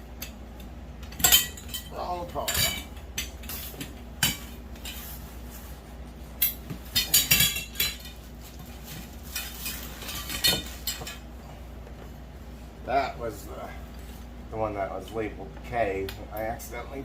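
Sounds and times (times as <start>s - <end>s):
metal poles clinking: 0.2s - 5.2s, 6.3s - 11.3s.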